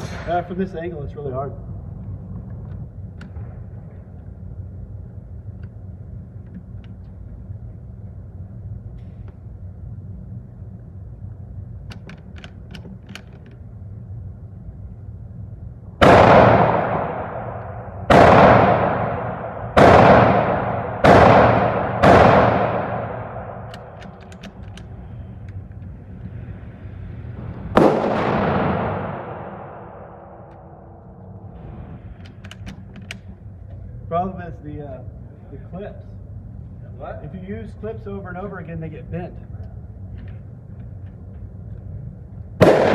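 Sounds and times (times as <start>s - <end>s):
rifle shots echoing: 16.0s - 25.0s, 27.6s - 32.0s, 42.6s - 42.9s.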